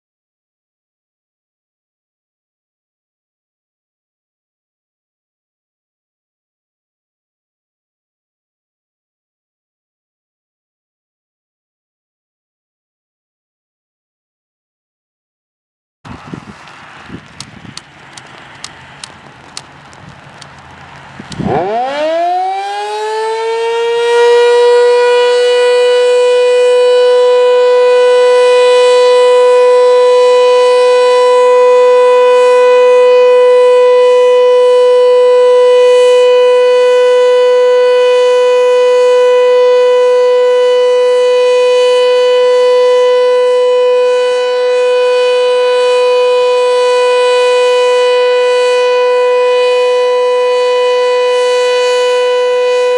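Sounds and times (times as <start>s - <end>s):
warning siren winding up: 20.3s - 52.9s.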